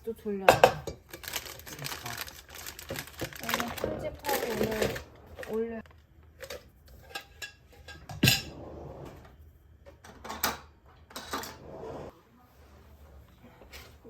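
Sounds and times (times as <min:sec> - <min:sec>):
dishes and cutlery clattering: 0:06.4 - 0:08.6, 0:10.0 - 0:11.6.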